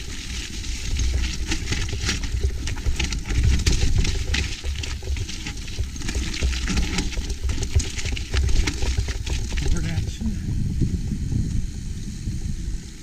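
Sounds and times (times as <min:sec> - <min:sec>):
bike rattling over rocks: 0:00.0 - 0:10.2
wind buffeting microphone: 0:00.8 - 0:13.0.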